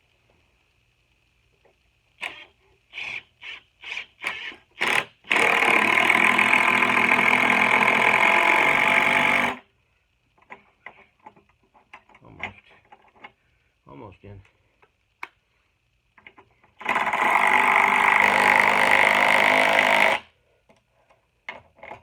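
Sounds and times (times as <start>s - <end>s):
impact drill driving bolt into wood: 3.9s - 9.6s.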